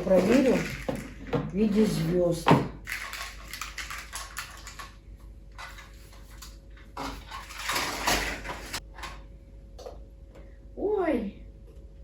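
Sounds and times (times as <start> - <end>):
packaging rustling: 2.8 - 5.0
fairy lights clicking and rattling: 2.9 - 5.0.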